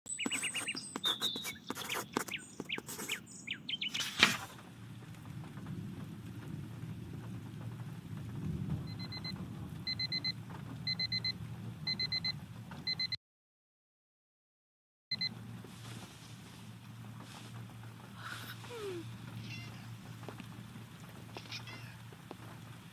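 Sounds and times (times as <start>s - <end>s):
bird chirping: 0.1s - 4.1s
wood fire crackling and popping: 4.6s - 9.9s
steady low rumble: 4.6s - 12.8s, 15.3s - 22.9s.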